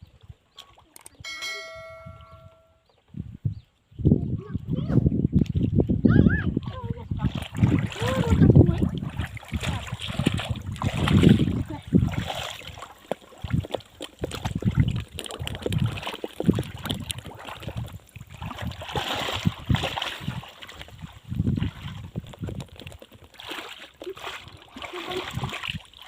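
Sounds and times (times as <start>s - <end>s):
pond water sloshing and splashing: 0.0s - 2.5s, 6.5s - 26.0s.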